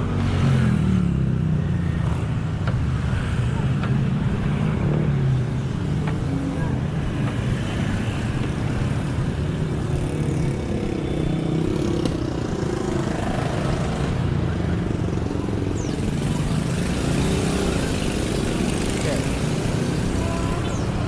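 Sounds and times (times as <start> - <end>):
street traffic: 0.0 - 21.0
vehicle engine running: 8.2 - 21.0.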